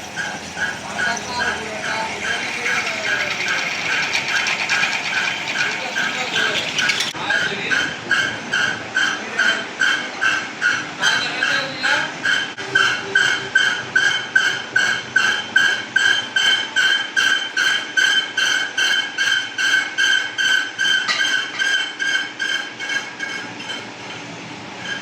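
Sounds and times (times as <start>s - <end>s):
metalworking machine clacking: 0.0s - 25.0s.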